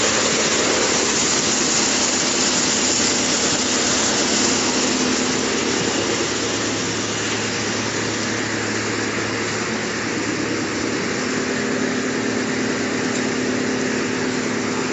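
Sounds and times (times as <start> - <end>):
wood chipper running: 0.0 - 14.9.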